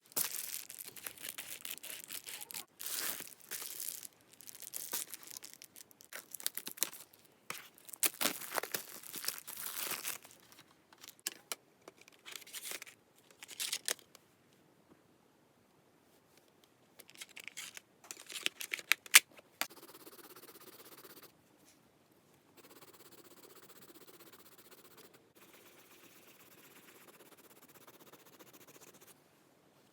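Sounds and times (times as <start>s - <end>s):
packaging being torn and crinkled: 0.0s - 11.3s, 17.0s - 19.3s.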